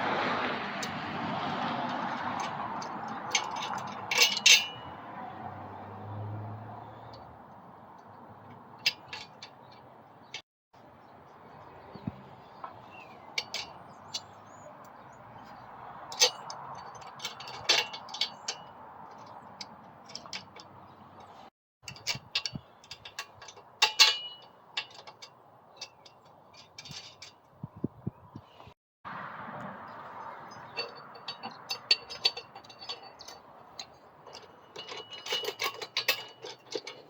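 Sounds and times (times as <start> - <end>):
metallic clinks and knocks: 1.9 - 5.0, 8.4 - 10.4, 13.4 - 14.6, 15.4 - 27.5, 30.0 - 37.0.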